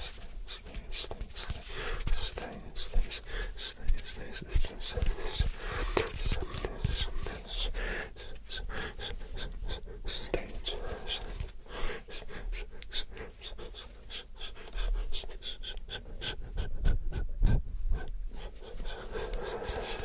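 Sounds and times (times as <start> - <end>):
breathy whispering: 0.0 - 20.0.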